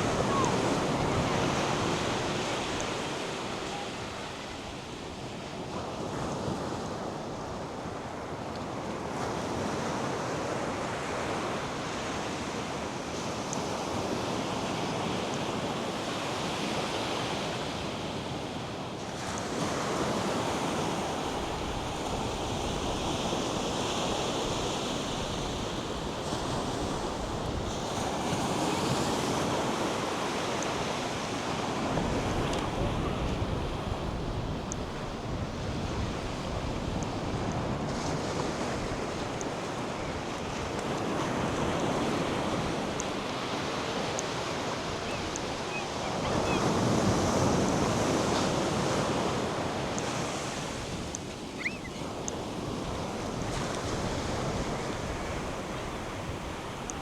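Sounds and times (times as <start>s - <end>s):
wind buffeting microphone: 31.6s - 39.6s.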